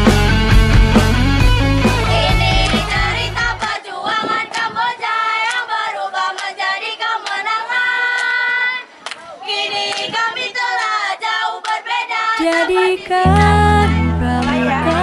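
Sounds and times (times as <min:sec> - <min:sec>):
young voices singing together: 0:01.8 - 0:15.0.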